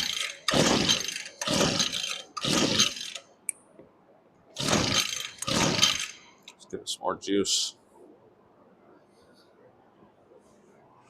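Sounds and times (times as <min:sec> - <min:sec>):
engine turning over: 0:00.0 - 0:03.2, 0:04.6 - 0:06.2
recoil starter cord pulls: 0:00.0 - 0:03.2, 0:04.6 - 0:06.2.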